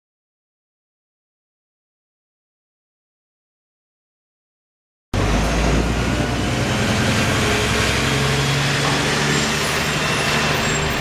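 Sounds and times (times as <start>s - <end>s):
bus engine drone: 5.2s - 11.0s.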